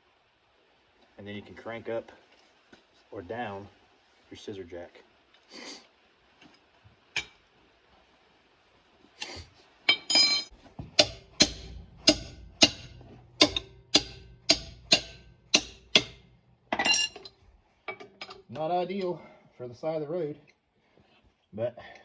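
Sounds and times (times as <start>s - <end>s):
sledgehammer clanking on metal: 9.9s - 18.5s.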